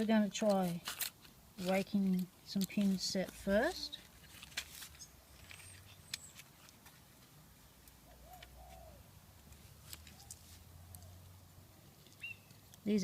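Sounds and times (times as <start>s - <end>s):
dove cooing: 8.0s - 9.1s.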